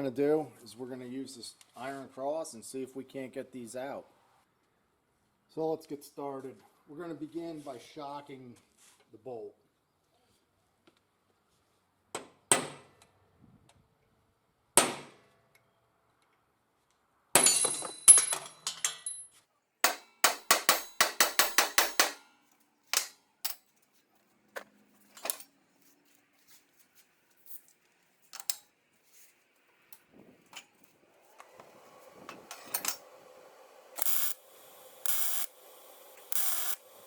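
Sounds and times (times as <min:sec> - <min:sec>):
hammer striking metal bolt: 0:19.8 - 0:22.3, 0:22.9 - 0:23.6.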